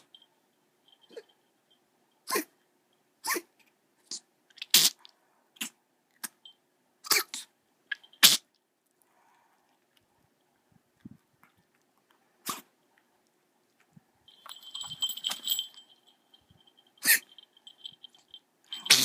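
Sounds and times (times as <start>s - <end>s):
dog coughing: 17.0s - 17.3s, 18.8s - 19.0s.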